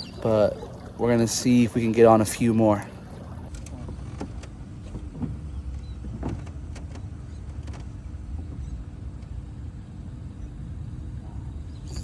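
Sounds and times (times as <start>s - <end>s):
light clicks and knocks: 3.5s - 9.4s.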